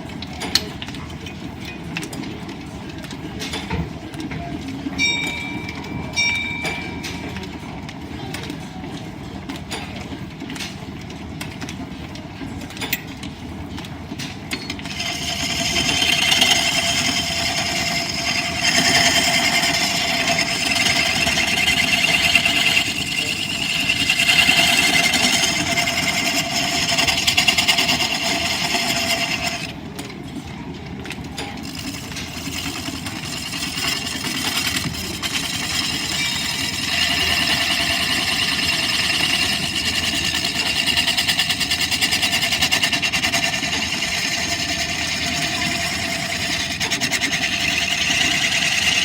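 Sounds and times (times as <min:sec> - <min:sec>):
lathe shafting and belts rumbling: 0:00.0 - 0:49.0
tool cutting spinning wood: 0:14.6 - 0:29.9, 0:31.5 - 0:49.0.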